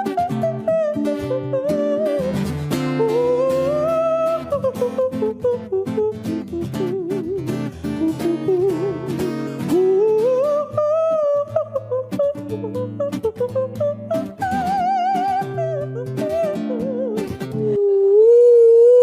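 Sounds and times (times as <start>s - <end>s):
strummed acoustic guitar: 0.0s - 17.9s
person singing with vibrato: 0.0s - 19.0s.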